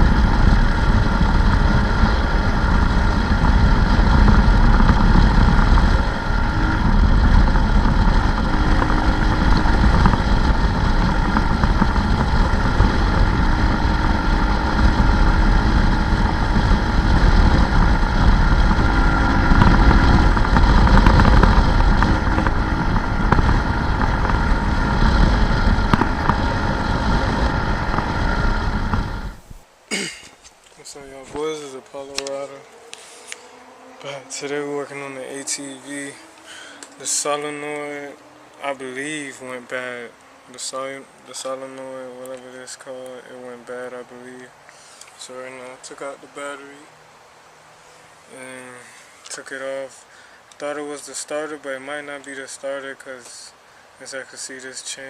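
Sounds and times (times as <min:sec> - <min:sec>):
wind buffeting microphone: 0:00.0 - 0:29.8
atv engine running: 0:00.0 - 0:30.0, 0:32.0 - 0:41.8.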